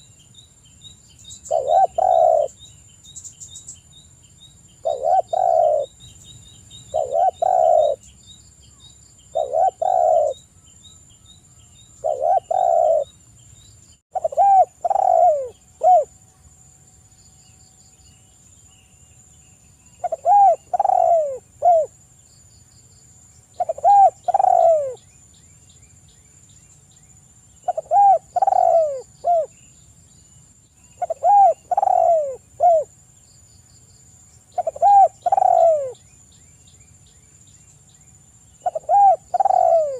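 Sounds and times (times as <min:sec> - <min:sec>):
small bird chirps: 0:00.0 - 0:16.5, 0:17.1 - 0:39.9
high insect drone: 0:00.0 - 0:39.9
dove cooing: 0:01.5 - 0:02.6, 0:04.8 - 0:06.0, 0:06.9 - 0:08.0, 0:09.3 - 0:10.4, 0:12.0 - 0:13.1, 0:14.1 - 0:16.2, 0:20.0 - 0:22.0, 0:23.6 - 0:25.0, 0:27.6 - 0:29.5, 0:31.0 - 0:32.9, 0:34.6 - 0:36.0, 0:38.6 - 0:39.9.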